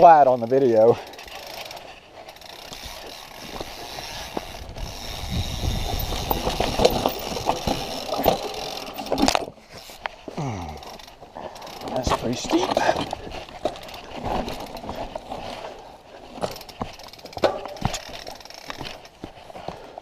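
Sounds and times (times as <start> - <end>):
bike rattling over rocks: 0.0 - 20.0
bicycle freewheel ratchet clicking: 0.2 - 10.1, 10.8 - 12.2, 16.4 - 19.2.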